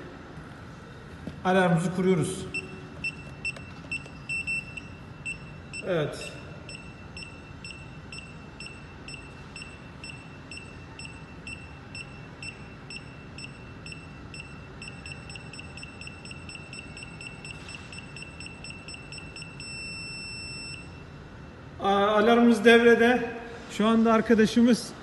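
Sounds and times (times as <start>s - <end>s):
steady continuous tone: 0.0s - 23.8s
alarm keypad beeping: 2.5s - 21.0s.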